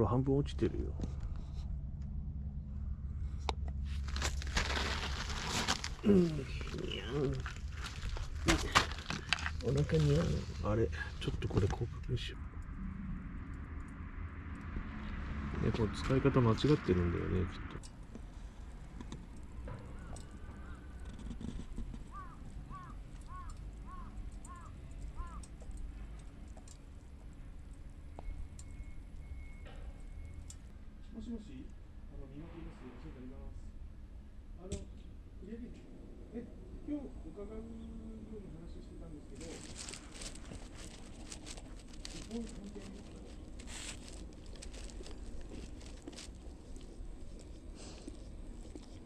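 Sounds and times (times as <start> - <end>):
low wind rumble: 0.0 - 49.0
rustling crackling noise: 3.2 - 17.0, 17.8 - 30.6, 38.7 - 49.0
bird harsh calls: 22.1 - 25.5.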